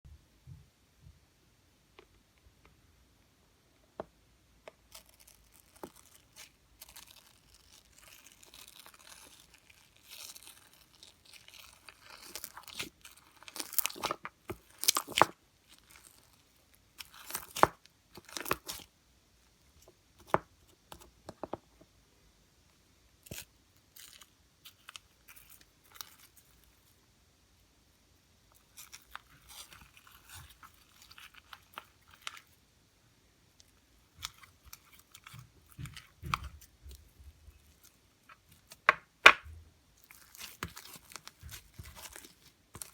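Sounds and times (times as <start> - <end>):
hands squishing slime: 4.8 - 18.9, 34.0 - 42.9.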